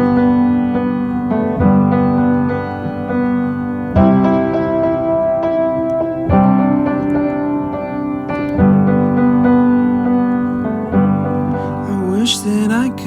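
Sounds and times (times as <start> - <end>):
sustained piano chords: 0.0 - 13.0.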